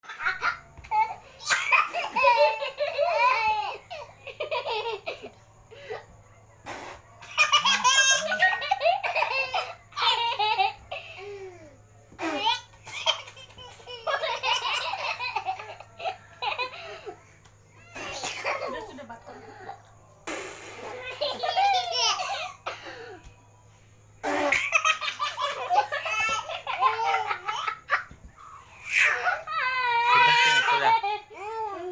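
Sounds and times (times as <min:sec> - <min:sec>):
baby laughing: 0:24.2 - 0:28.1.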